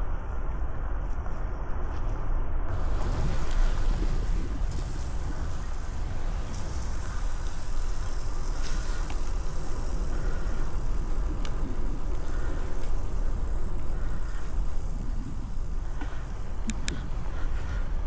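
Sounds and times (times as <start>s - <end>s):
wind buffeting microphone: 0.0s - 18.0s
faint clicks: 4.7s - 17.9s.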